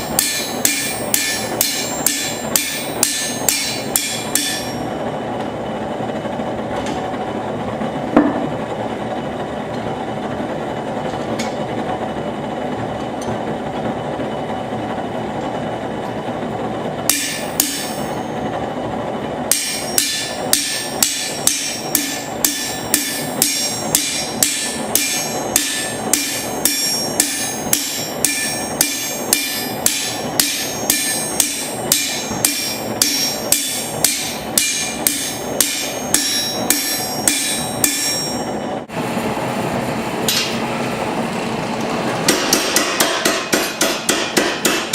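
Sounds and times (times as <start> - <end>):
hammer striking steel: 0.0 - 4.9, 17.1 - 18.4, 19.5 - 38.6, 42.3 - 44.9.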